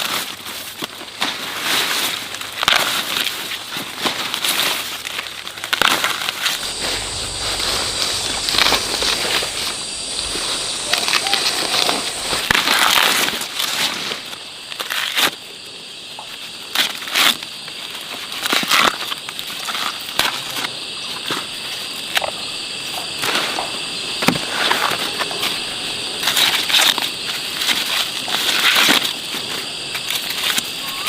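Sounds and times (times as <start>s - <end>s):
high-pitched drone: 6.4s - 12.8s.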